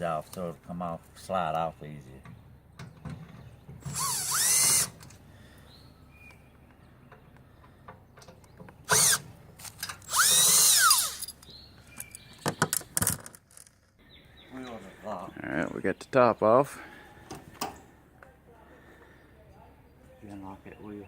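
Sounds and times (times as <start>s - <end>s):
power drill motor whine: 3.9s - 5.0s, 8.9s - 9.2s, 10.1s - 11.3s.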